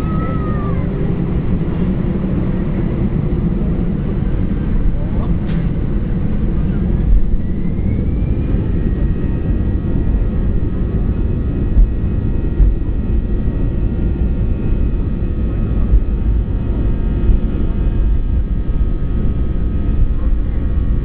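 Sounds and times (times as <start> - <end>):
faint engine whine: 0.0 - 21.0
jet engine rumble in cabin: 0.0 - 21.0.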